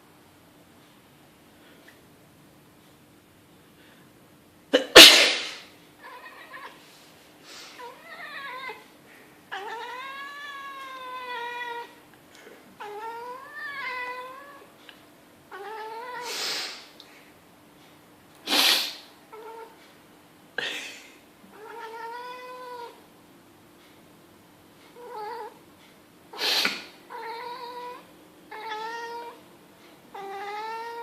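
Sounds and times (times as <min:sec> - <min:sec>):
person sneezing: 0:04.7 - 0:05.7, 0:18.4 - 0:19.1, 0:26.4 - 0:27.0
cat meowing: 0:06.0 - 0:06.8, 0:07.8 - 0:08.9, 0:09.5 - 0:12.0, 0:12.8 - 0:14.7, 0:15.5 - 0:16.4, 0:21.5 - 0:23.0, 0:25.0 - 0:25.6, 0:27.1 - 0:29.4, 0:30.1 - 0:31.0.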